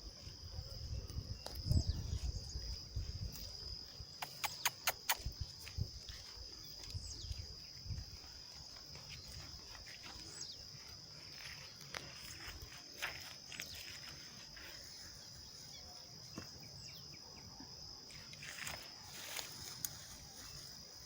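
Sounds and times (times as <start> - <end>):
insects trilling: 0.0 - 21.0
scattered clicks: 4.2 - 5.3.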